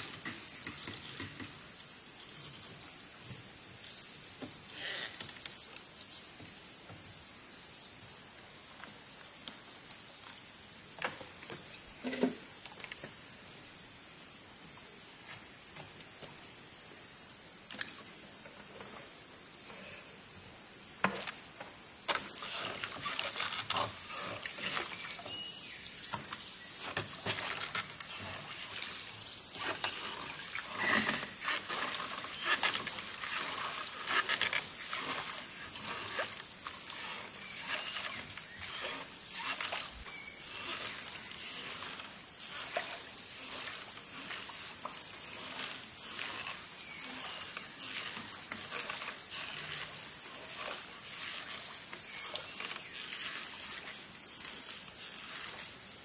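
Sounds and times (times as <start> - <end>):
insects chirring: 0.0 - 56.0.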